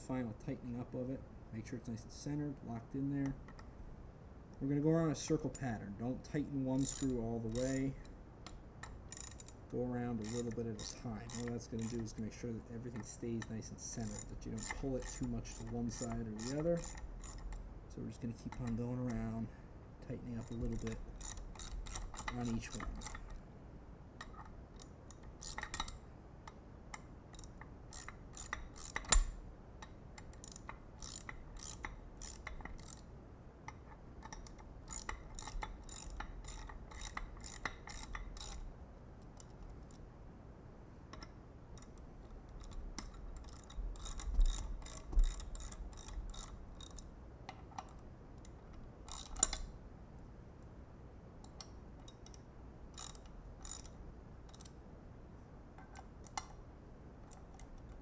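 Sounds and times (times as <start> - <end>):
ratchet wrench clicking: 6.8 - 8.0, 9.1 - 12.3, 13.0 - 17.6, 20.3 - 23.3, 24.2 - 26.0, 27.3 - 29.4, 30.2 - 33.1, 34.2 - 38.6, 42.6 - 47.1, 49.1 - 49.7, 53.0 - 54.8.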